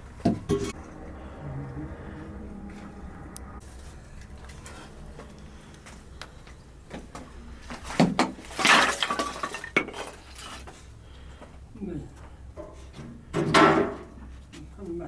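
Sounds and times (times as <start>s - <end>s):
clatter and scraping: 0.0s - 11.4s.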